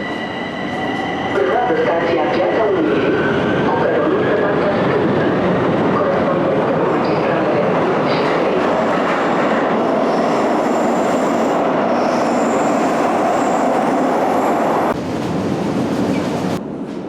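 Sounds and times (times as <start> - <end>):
metro train rolling on track: 0.0 - 17.0
high wheel squeals: 10.0 - 14.9.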